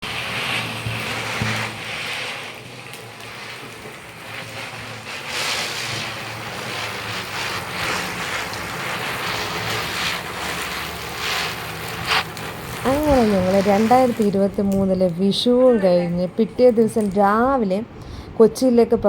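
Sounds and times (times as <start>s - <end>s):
rushing water: 0.0s - 14.2s.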